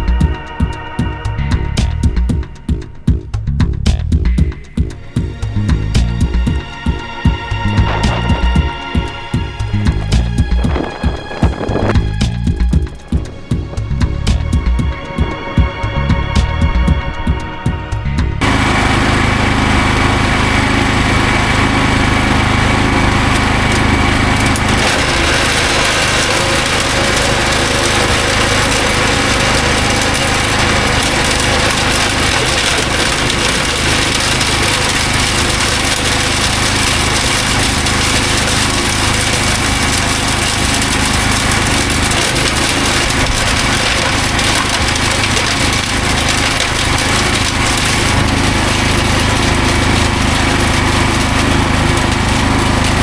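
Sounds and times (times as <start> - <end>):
wood chipper engine running: 4.3 - 17.3, 18.2 - 53.0
wood being chipped: 4.4 - 13.3, 23.3 - 53.0.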